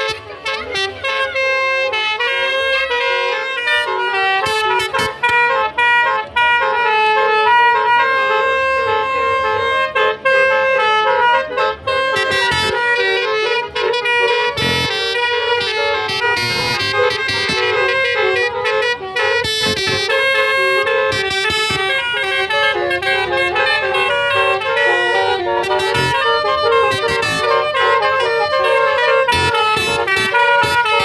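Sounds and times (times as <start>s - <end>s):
musical car horn tune: 0.0s - 31.0s.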